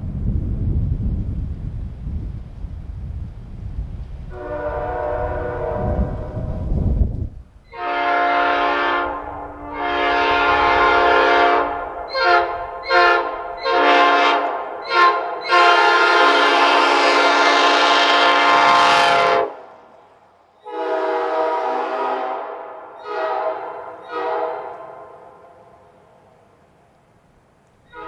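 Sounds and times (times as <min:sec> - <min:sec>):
locomotive air horn: 0:04.3 - 0:06.6, 0:07.7 - 0:19.6, 0:20.6 - 0:26.0.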